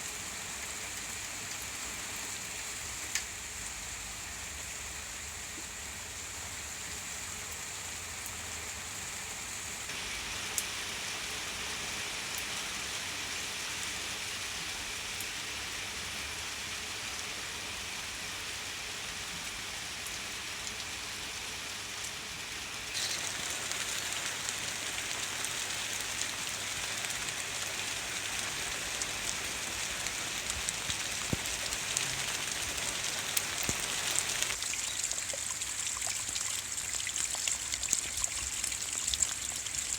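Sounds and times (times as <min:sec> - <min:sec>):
steady rain hiss: 0:00.0 - 0:36.8
raindrops ticking: 0:23.0 - 0:36.4.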